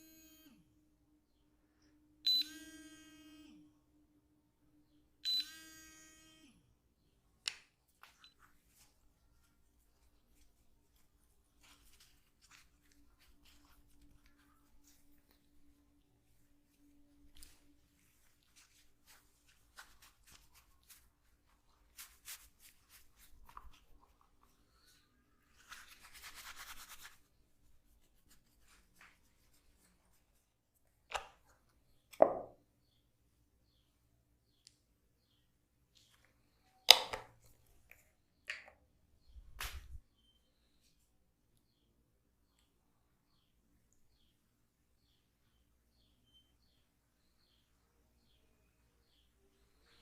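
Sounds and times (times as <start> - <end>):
hands rubbing skin and hair: 7.8 - 30.6
sharp snap: 39.6 - 40.0.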